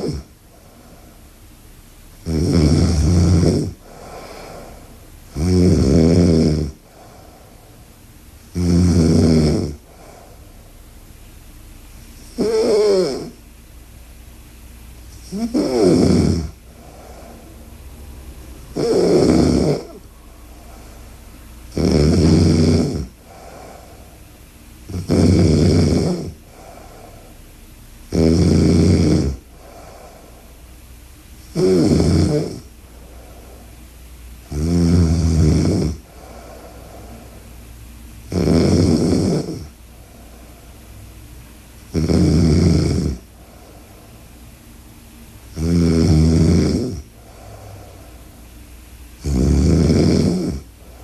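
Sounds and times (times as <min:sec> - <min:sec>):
woman snoring loudly: 0:00.0 - 0:00.3, 0:02.2 - 0:07.2, 0:08.6 - 0:10.1, 0:12.2 - 0:13.4, 0:15.2 - 0:17.0, 0:18.7 - 0:20.0, 0:21.7 - 0:24.0, 0:24.9 - 0:27.0, 0:28.1 - 0:30.2, 0:31.5 - 0:32.7, 0:34.5 - 0:36.7, 0:38.3 - 0:39.7, 0:41.9 - 0:43.3, 0:45.6 - 0:47.6, 0:49.2 - 0:50.7
faint breath: 0:00.4 - 0:01.4, 0:03.8 - 0:05.1, 0:06.8 - 0:08.0, 0:09.8 - 0:10.9, 0:16.6 - 0:18.8, 0:19.9 - 0:21.6, 0:23.1 - 0:24.4, 0:26.4 - 0:27.5, 0:29.4 - 0:30.8, 0:32.6 - 0:33.9, 0:36.0 - 0:37.8, 0:39.7 - 0:41.5, 0:43.2 - 0:44.8, 0:47.1 - 0:48.7, 0:50.6 - 0:51.0.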